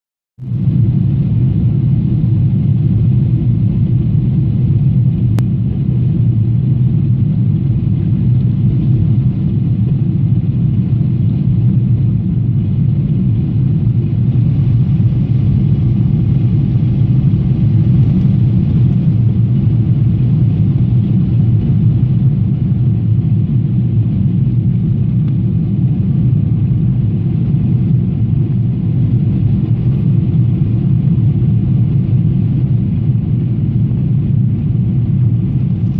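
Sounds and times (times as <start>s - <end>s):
jet engines droning: 0.4s - 35.9s.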